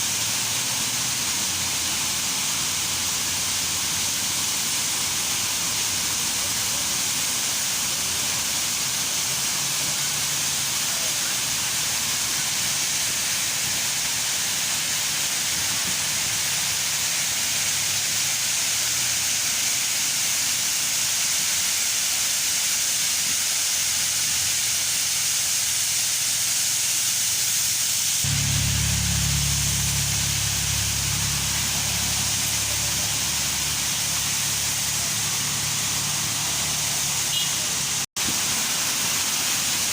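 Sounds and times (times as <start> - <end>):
waterfall hiss: 0.0 - 39.9
low rumble: 28.2 - 34.7.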